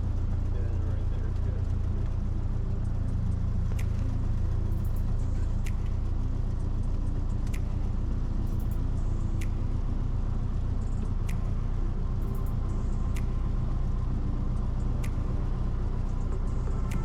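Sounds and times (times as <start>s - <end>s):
propeller plane engine drone: 0.0s - 17.0s
faint sharp click: 7.4s - 7.8s.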